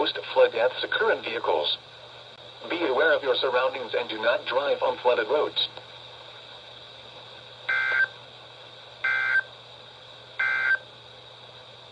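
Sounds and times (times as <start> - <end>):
faint steady hum: 0.0 - 11.9
buzzing two-tone data bursts: 7.7 - 8.1, 9.0 - 9.5, 10.4 - 10.8.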